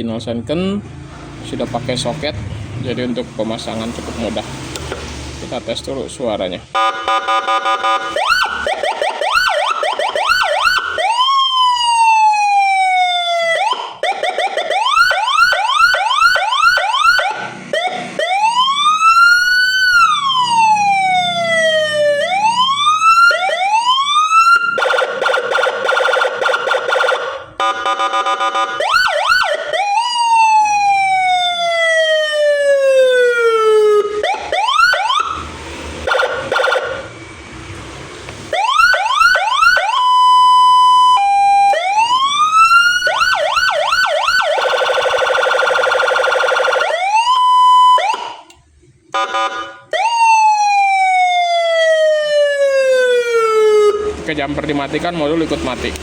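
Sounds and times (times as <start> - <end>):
electronic siren yelps and wails: 6.7 - 37.3, 38.5 - 54.4.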